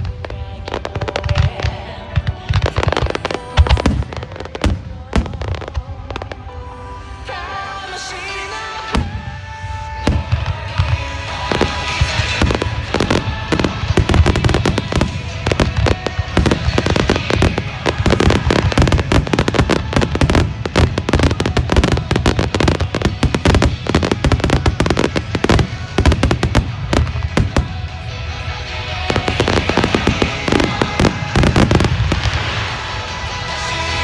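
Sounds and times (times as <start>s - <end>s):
fireworks bangs and crackles: 0.0s - 7.5s, 8.2s - 34.0s
music playing: 0.0s - 34.0s.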